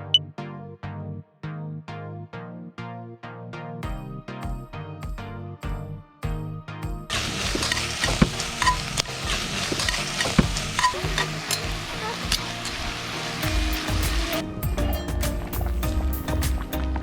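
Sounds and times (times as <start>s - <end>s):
background music: 0.0s - 17.0s
food sizzling in a pan: 7.1s - 14.4s.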